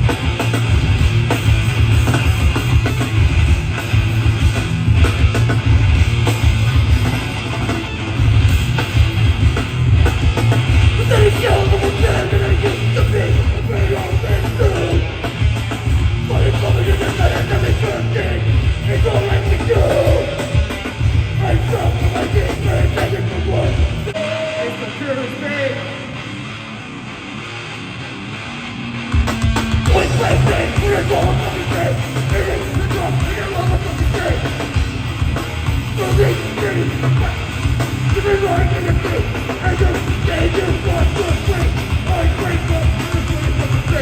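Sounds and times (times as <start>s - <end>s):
pounding drums: 0.0s - 24.2s, 29.2s - 44.0s
distorted guitars: 0.0s - 44.0s
heavy bass: 0.0s - 44.0s
live hardcore band playing: 0.0s - 44.0s
person yelling over music: 10.9s - 15.2s, 16.3s - 26.3s, 29.9s - 34.6s, 35.9s - 44.0s.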